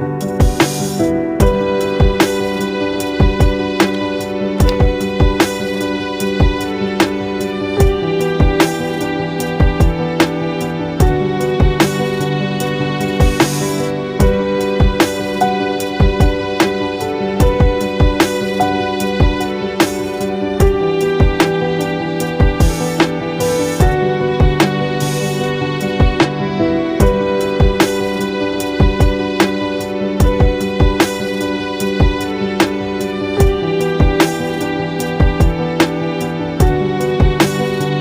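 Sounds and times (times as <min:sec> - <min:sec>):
kick-drum beat: 0:04.6 - 0:05.4.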